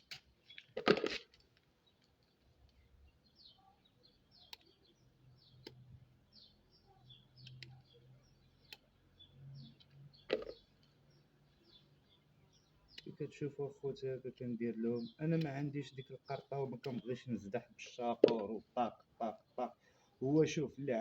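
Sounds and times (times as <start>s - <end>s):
birds chirping: 0.0s - 21.0s
sharp clicks: 4.4s - 4.8s, 5.5s - 5.9s, 7.4s - 7.9s, 8.6s - 8.9s, 12.9s - 13.2s, 15.3s - 15.7s, 16.8s - 17.1s.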